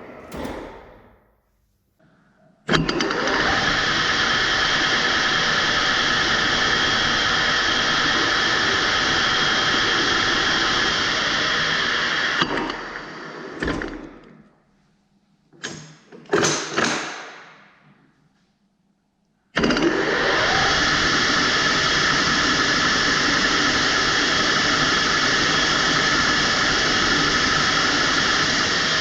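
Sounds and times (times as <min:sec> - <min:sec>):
sharp knocks: 0:00.0 - 0:01.6
lathe running with gear whine: 0:03.0 - 0:13.5.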